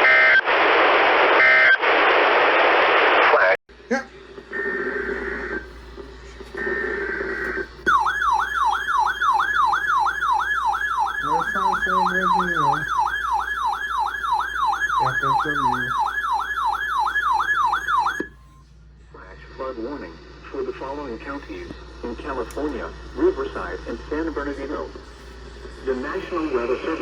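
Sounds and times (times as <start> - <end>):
electronic alert siren: 6.6 - 18.6
warbling data tones: 6.6 - 18.6.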